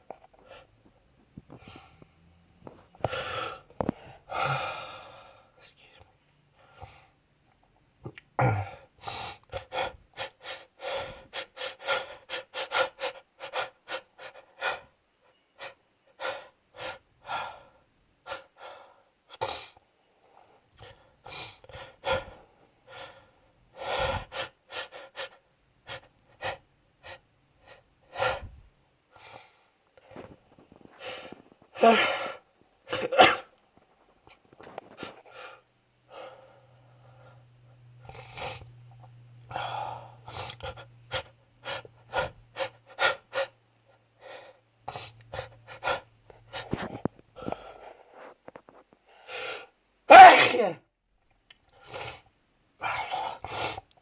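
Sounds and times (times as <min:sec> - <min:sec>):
man sneezing: 0:32.9 - 0:33.5, 0:50.1 - 0:50.8
man gasping before sneezing: 0:50.1 - 0:50.8.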